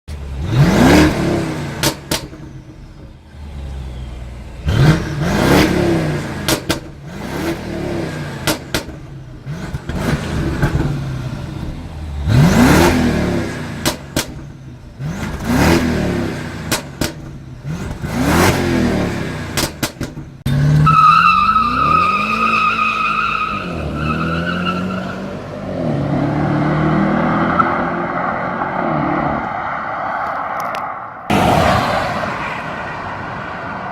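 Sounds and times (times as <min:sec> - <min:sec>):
engine revving: 0:00.1 - 0:02.6, 0:03.2 - 0:33.9
exhaust pops and crackles: 0:16.6 - 0:18.0, 0:19.5 - 0:20.4.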